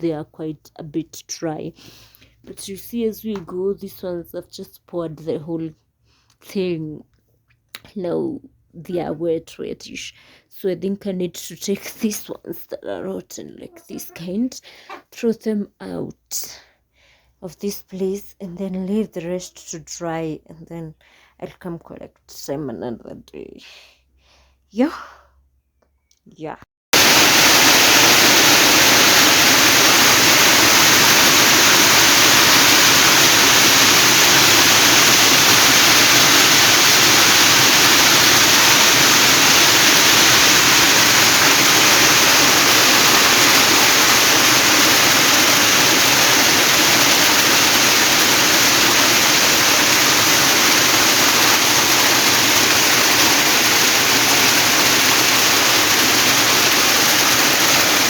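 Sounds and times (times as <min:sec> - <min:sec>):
heavy rain pouring: 0:27.0 - 0:58.0.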